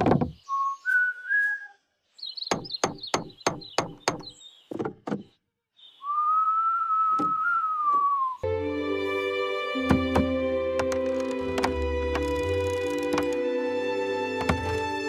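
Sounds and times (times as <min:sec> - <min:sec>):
cartoon hammering knocks: 0:00.0 - 0:00.4, 0:02.5 - 0:05.4, 0:09.8 - 0:13.4, 0:14.4 - 0:14.8
long whistled note: 0:06.0 - 0:08.5.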